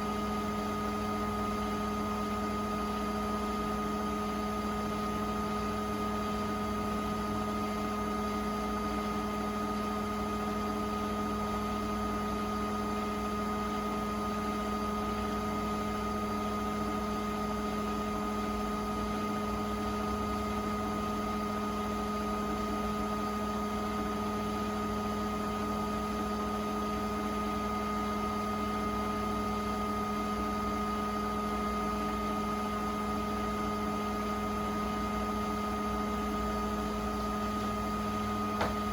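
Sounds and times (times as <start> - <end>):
washing machine humming: 0.0 - 38.9
steady machine whine: 36.4 - 38.9.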